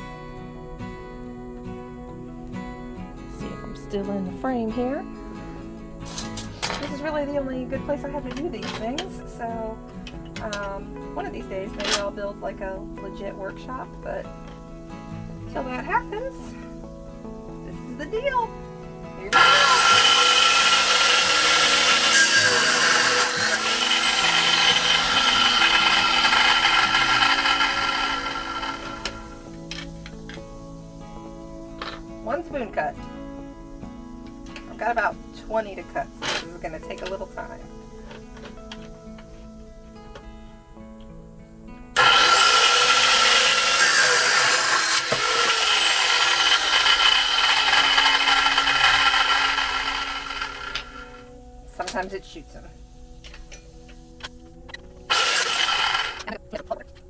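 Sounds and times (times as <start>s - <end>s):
power tool grinding metal: 19.3s - 30.2s, 42.0s - 51.3s, 53.3s - 56.4s.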